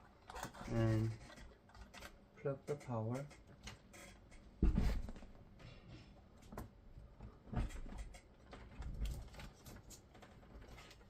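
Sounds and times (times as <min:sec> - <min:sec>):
thump: 0:04.6 - 0:05.2.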